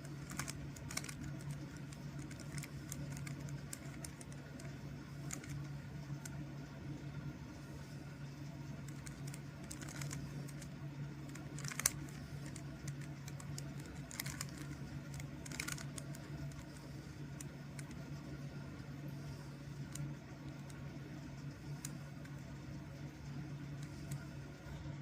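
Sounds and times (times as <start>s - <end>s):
steady low hum: 0.0s - 25.0s
puzzle cube clicking: 0.1s - 5.6s, 11.3s - 16.8s.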